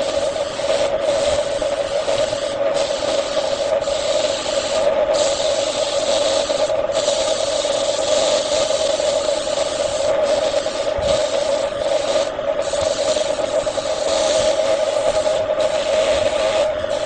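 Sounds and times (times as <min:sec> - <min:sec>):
tool scraping spinning wood: 0:00.0 - 0:17.0
wood lathe running: 0:00.0 - 0:17.0.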